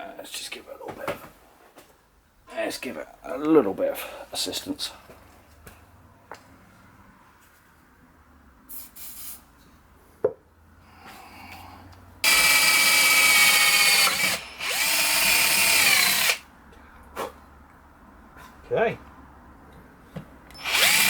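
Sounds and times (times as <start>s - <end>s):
cordless drill drilling into bolt: 12.2s - 16.4s, 20.5s - 21.0s.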